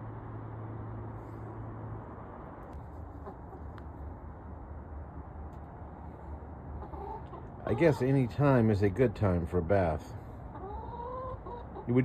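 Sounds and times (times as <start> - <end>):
hens clucking softly: 2.7 - 4.0, 6.7 - 8.4, 10.4 - 12.0.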